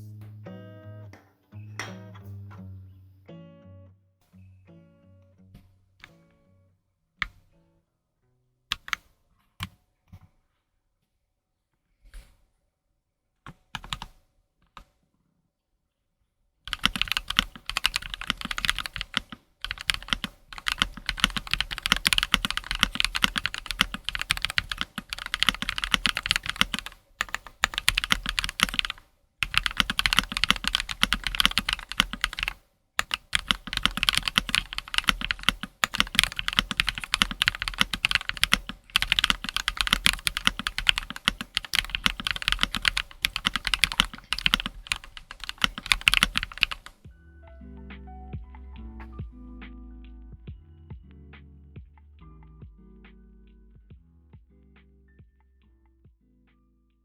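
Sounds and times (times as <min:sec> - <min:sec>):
fast mechanical keyboard typing: 0:13.8 - 0:14.1, 0:16.7 - 0:47.0.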